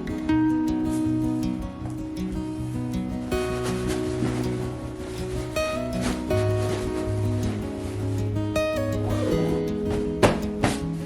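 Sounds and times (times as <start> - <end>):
acoustic guitar music: 0.0 - 11.0.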